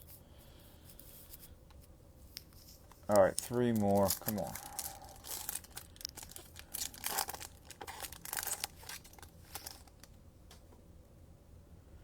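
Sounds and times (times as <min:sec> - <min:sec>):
cards rustling and crinkling: 0:02.3 - 0:10.1.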